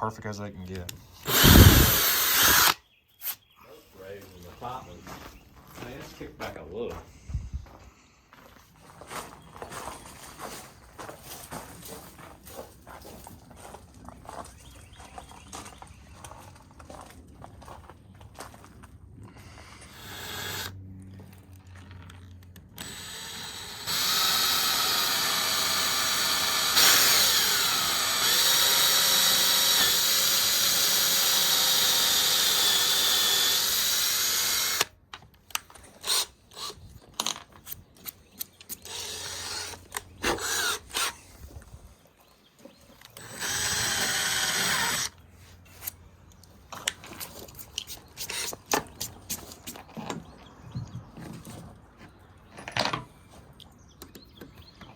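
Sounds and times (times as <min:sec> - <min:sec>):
power drill running: 0:01.2 - 0:02.8, 0:19.6 - 0:20.7, 0:22.8 - 0:34.9, 0:38.9 - 0:41.2, 0:43.2 - 0:45.2.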